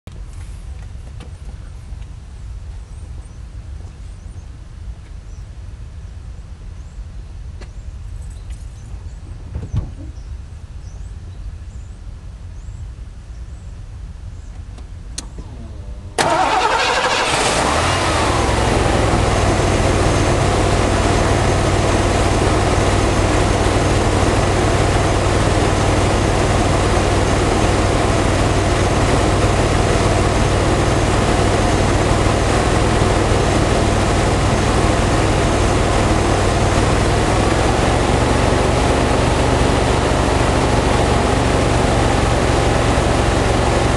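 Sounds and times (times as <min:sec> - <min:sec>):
car engine starting and idling: 0:14.8 - 0:43.9.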